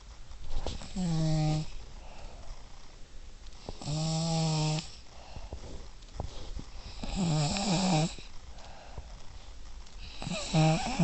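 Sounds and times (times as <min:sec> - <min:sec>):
quiet breathing: 0:00.5 - 0:11.0
child snoring: 0:00.8 - 0:01.8, 0:03.8 - 0:05.0, 0:06.9 - 0:08.3, 0:10.0 - 0:11.0.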